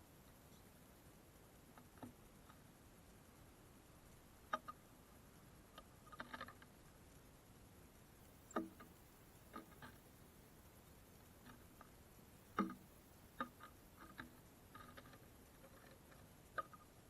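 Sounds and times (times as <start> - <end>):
birds pecking at feeder: 3.9 - 17.0.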